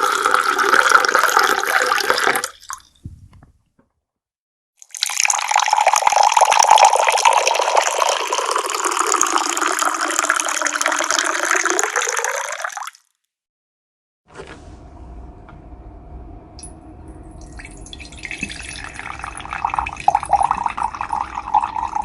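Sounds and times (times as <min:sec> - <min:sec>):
water pouring in a stream: 0:00.0 - 0:02.8, 0:04.8 - 0:13.0, 0:17.6 - 0:22.0.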